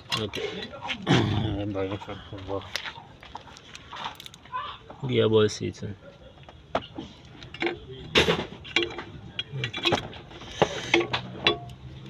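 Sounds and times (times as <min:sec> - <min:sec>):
metallic clatter: 0:07.4 - 0:11.9.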